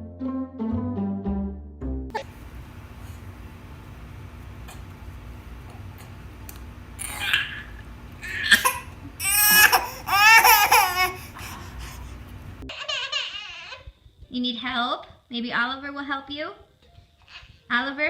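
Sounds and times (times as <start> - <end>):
low background hum: 2.1 - 18.0
baby crying or laughing: 7.0 - 13.9.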